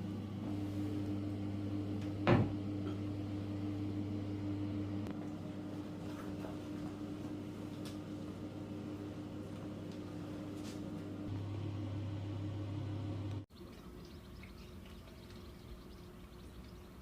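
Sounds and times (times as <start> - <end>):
kitchen appliance humming: 0.0 - 13.5.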